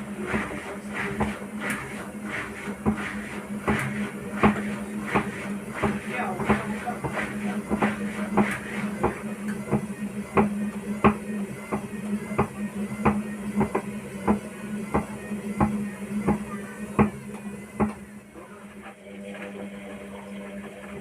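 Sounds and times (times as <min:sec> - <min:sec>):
washing machine knocking: 0:00.0 - 0:18.1
washing machine motor hum: 0:00.0 - 0:21.0.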